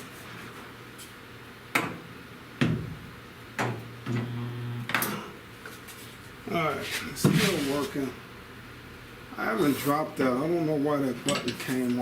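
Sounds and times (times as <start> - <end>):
short low buzz: 4.1 - 4.9.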